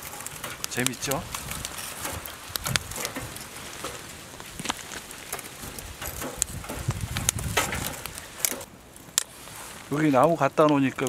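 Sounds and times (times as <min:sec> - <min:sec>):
logs knocking: 0:00.0 - 0:08.7
wood fire crackling and popping: 0:00.0 - 0:11.0.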